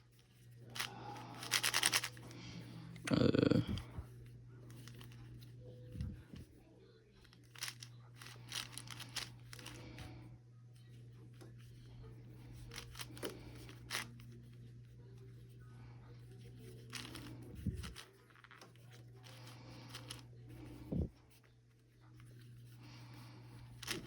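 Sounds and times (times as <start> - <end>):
steady low hum: 0.0 - 24.0
plastic puzzle cube clicking: 0.8 - 2.2, 7.5 - 9.8.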